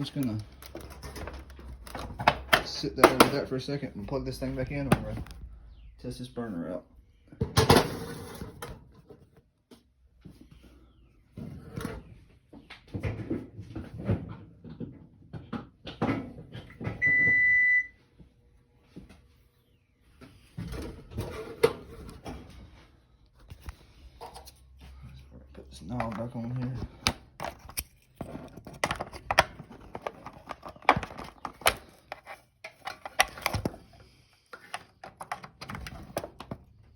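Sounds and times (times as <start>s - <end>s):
stove parts clattering: 0.0s - 3.5s
electric range beep: 17.0s - 18.0s.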